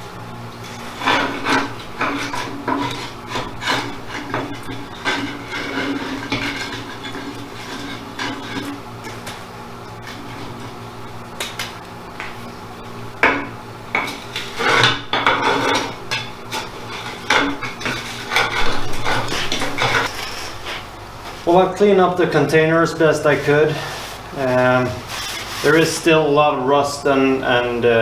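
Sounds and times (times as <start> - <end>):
metal tool scraping and knocking: 1.0 - 9.2.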